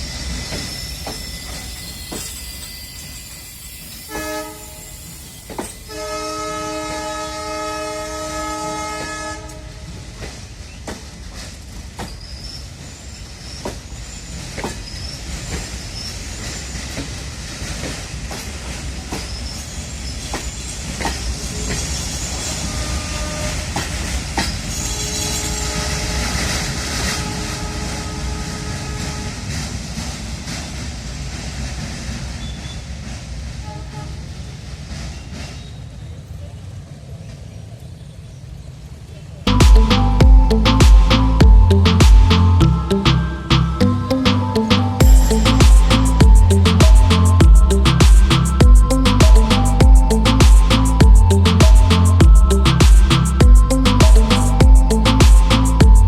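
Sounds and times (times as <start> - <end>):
train wheels clicking over rail joints: 0.0 - 6.0, 8.8 - 25.0
locomotive horn blast: 4.1 - 4.9, 5.9 - 9.9, 22.5 - 23.8, 24.8 - 29.4
diesel engine humming: 39.5 - 56.0.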